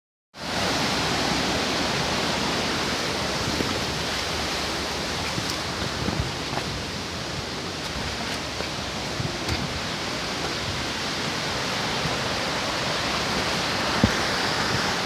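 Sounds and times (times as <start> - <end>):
rushing falling water: 0.4 - 15.0.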